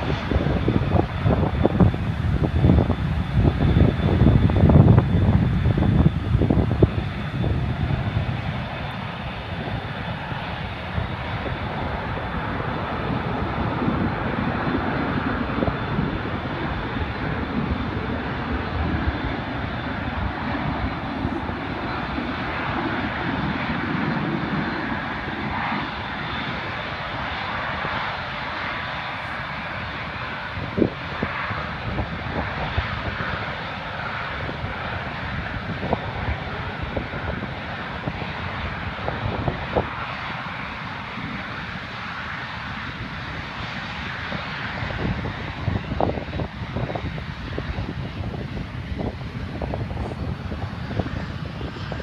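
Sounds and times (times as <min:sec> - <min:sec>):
jet engines rushing: 0:00.0 - 0:52.0
wind rumble on microphone: 0:00.0 - 0:52.0.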